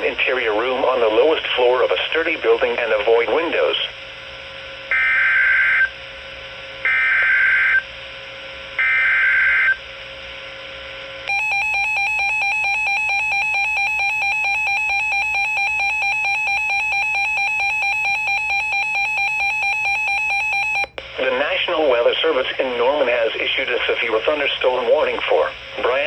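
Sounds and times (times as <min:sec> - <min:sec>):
shrill attention tone: 0:11.3 - 0:20.9.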